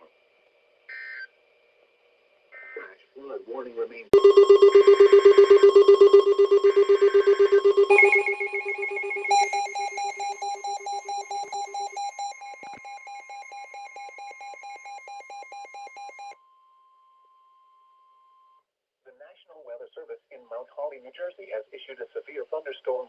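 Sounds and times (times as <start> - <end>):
rapidly pulsing electronic beeps: 4.2 - 16.4.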